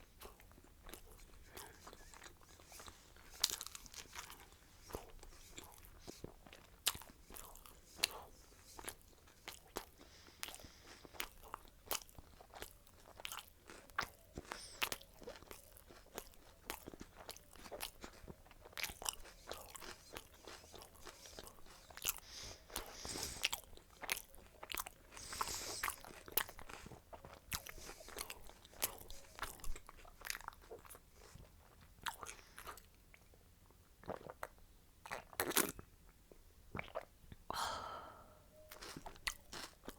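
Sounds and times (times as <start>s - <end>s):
person chewing crunchy food: 0.0s - 35.9s, 36.7s - 37.1s, 38.7s - 39.9s.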